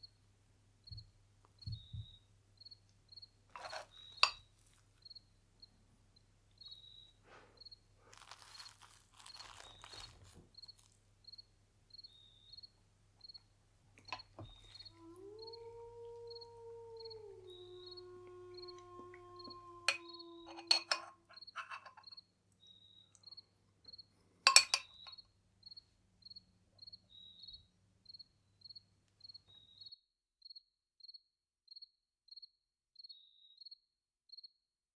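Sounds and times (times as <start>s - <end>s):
insect chirping: 0.8s - 34.5s
soft rustling and scraping: 8.0s - 11.0s
sharp clink: 24.5s - 25.2s.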